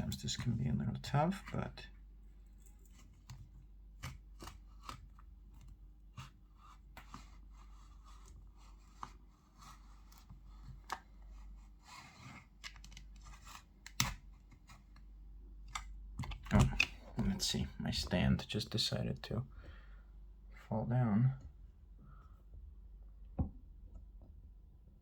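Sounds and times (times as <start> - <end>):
plastic card scraping and clicking: 2.8 - 17.5.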